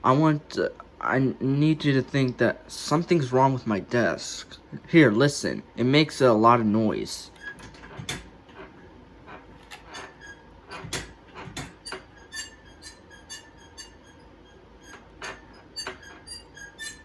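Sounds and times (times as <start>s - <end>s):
desk squeaking and clicking: 7.3s - 17.0s.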